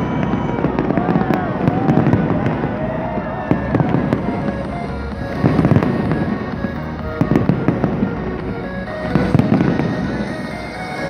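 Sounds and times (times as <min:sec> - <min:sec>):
fireworks bangs and crackles: 0:00.0 - 0:11.0
music playing: 0:00.0 - 0:11.0.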